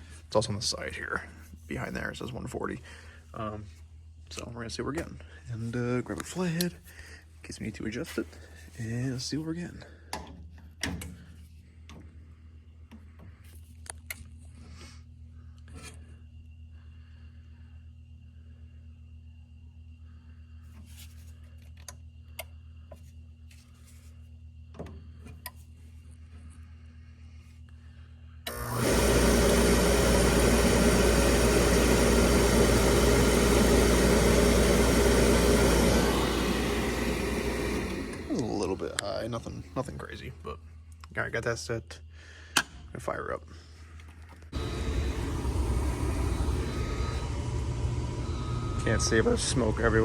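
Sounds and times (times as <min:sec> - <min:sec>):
steady low hum: 0:11.6 - 0:42.4, 0:43.6 - 0:50.0
oil burner running: 0:28.4 - 0:39.3, 0:44.5 - 0:50.0.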